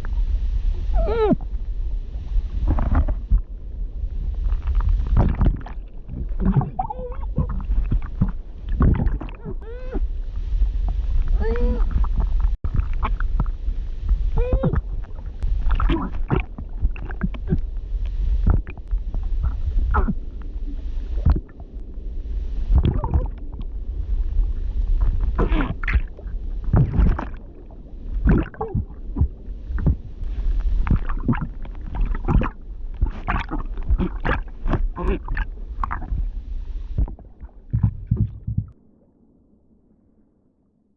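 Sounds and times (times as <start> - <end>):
bubbling and gurgling: 0.0 - 39.5
low water rumble: 0.0 - 40.9
woman's muffled underwater vocalizing: 0.9 - 1.5, 6.2 - 10.2, 11.3 - 13.2, 14.3 - 15.1, 15.7 - 17.7, 19.4 - 20.3, 22.8 - 23.4, 25.3 - 26.2, 28.3 - 30.1, 32.2 - 36.2.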